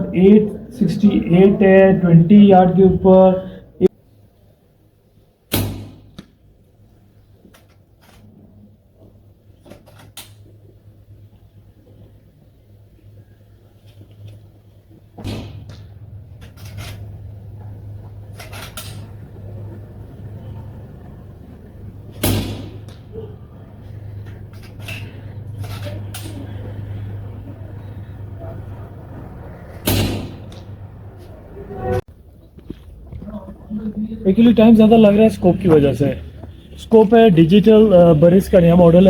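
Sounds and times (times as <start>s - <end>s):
air rifle shots: 22.1s - 23.1s, 29.7s - 30.7s.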